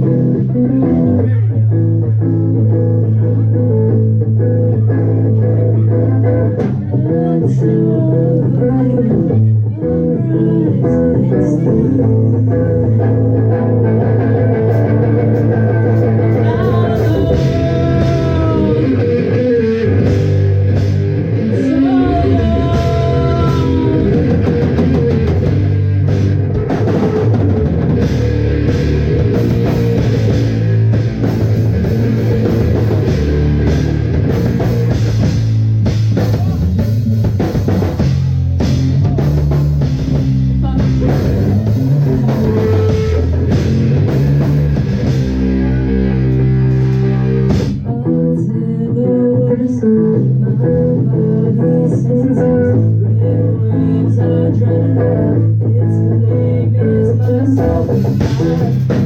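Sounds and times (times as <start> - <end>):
electric guitars: 0.0 - 59.0
drum kit: 10.7 - 48.2, 57.0 - 59.0.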